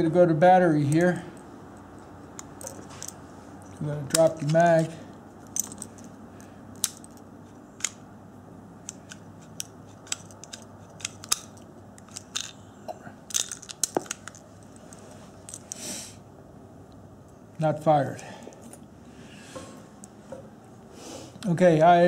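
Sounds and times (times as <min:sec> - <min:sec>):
metallic clicks of pistol handling: 0:06.7 - 0:07.2, 0:07.8 - 0:08.0, 0:08.8 - 0:12.6.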